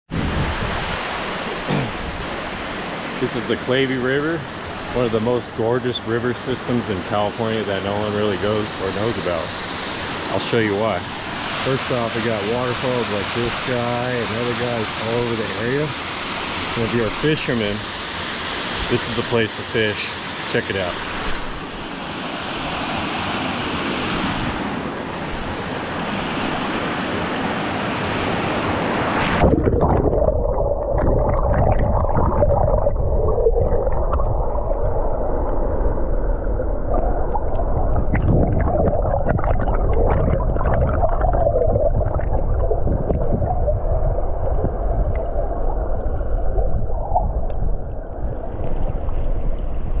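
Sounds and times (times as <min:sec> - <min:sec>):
waterfall and river rushing: 0:00.2 - 0:29.6
underwater gurgling: 0:28.8 - 0:50.0
underwater rumble of falling water: 0:29.0 - 0:50.0.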